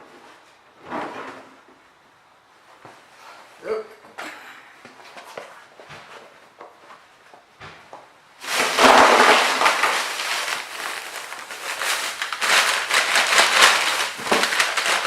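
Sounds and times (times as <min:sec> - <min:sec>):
bag crinkling: 0:08.4 - 0:15.0.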